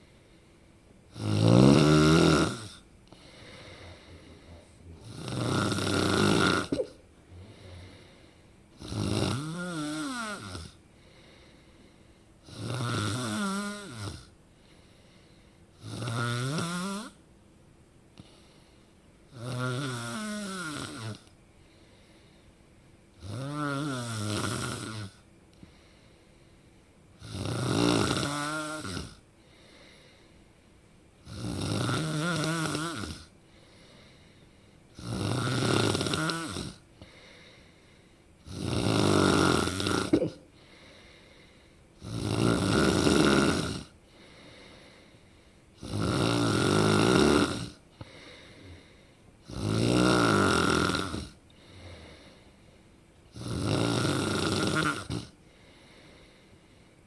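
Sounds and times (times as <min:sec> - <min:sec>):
faint breaths: 0:00.0 - 0:01.1, 0:02.6 - 0:08.9, 0:10.4 - 0:12.6, 0:13.8 - 0:15.8, 0:18.1 - 0:19.2, 0:21.0 - 0:23.2, 0:25.0 - 0:27.2, 0:28.2 - 0:31.4, 0:32.3 - 0:35.0, 0:35.8 - 0:46.8, 0:47.7 - 0:49.6, 0:51.0 - 0:53.4, 0:54.7 - 0:57.0
person snoring: 0:01.1 - 0:10.8, 0:12.4 - 0:14.3, 0:15.8 - 0:17.2, 0:19.3 - 0:21.2, 0:23.2 - 0:25.2, 0:27.2 - 0:30.0, 0:31.2 - 0:33.9, 0:35.0 - 0:37.6, 0:38.4 - 0:41.2, 0:42.0 - 0:44.9, 0:45.8 - 0:52.4, 0:53.3 - 0:56.3.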